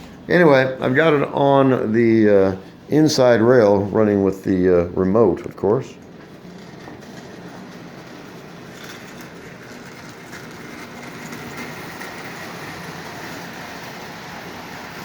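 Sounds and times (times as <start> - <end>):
model train wheels on rails: 0.0 - 15.0
model train motor hum: 6.0 - 15.0.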